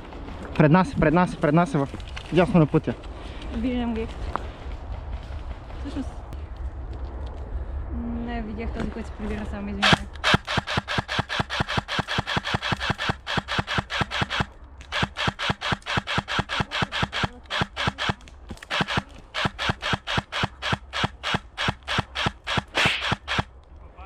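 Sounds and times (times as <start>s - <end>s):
airsoft rifle rapid fire: 9.8s - 23.5s.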